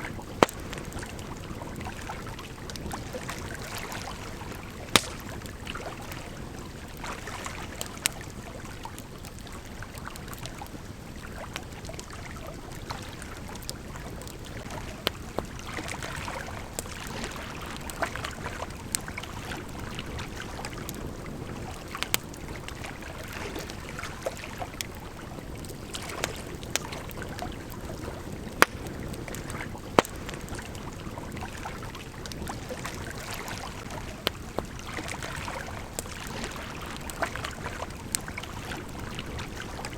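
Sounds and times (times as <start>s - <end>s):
river flowing: 0.0s - 10.2s
campfire crackling and popping: 0.0s - 39.9s.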